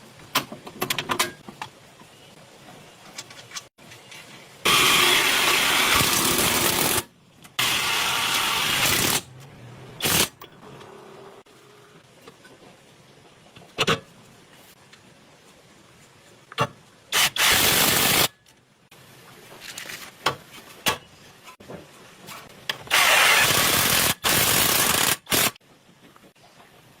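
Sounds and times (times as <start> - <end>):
pneumatic impact wrench: 4.7 - 9.3, 10.0 - 10.4, 17.2 - 18.3, 22.9 - 25.6.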